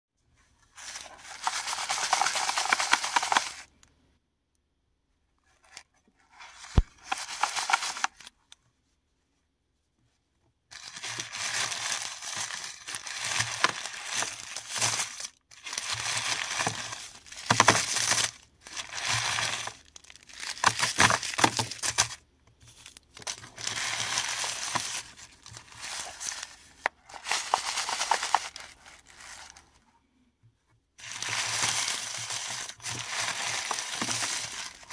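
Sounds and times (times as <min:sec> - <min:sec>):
packaging tearing and crinkling: 0:00.8 - 0:03.7, 0:06.7 - 0:08.3, 0:10.7 - 0:22.2, 0:22.8 - 0:29.6, 0:31.0 - 0:34.9.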